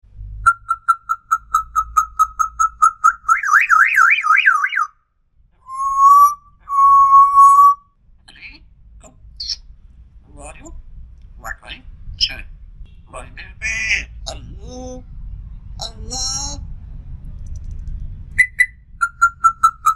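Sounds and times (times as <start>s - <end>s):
parrot whistling: 0.5s - 4.9s, 5.7s - 7.8s, 18.4s - 19.9s.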